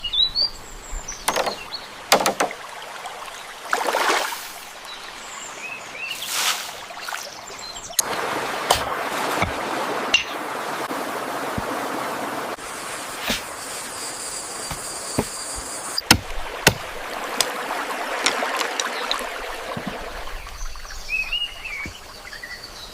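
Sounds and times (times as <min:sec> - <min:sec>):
running water: 0:00.4 - 0:22.9
water splashing: 0:01.3 - 0:05.4, 0:06.0 - 0:22.6.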